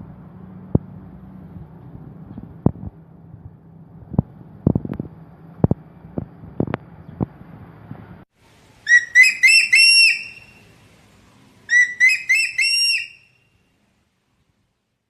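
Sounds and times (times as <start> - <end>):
eagle calling: 8.8 - 10.8, 11.7 - 13.4.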